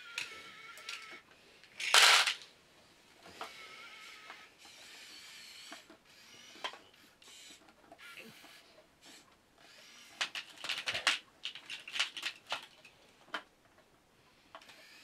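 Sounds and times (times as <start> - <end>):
small electric motors whining: 0.0 - 1.2, 3.3 - 10.5, 14.5 - 15.0.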